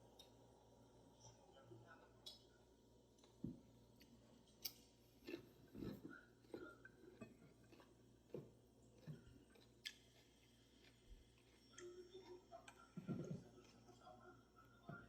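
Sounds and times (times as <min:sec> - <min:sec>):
open-mouthed chewing: 0:04.6 - 0:15.0.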